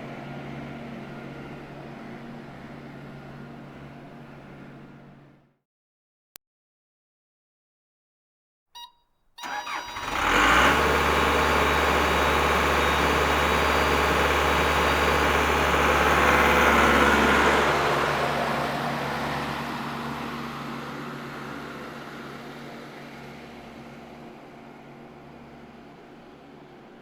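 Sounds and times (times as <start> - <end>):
loader engine starting and running: 0.0 - 5.4, 9.4 - 27.0.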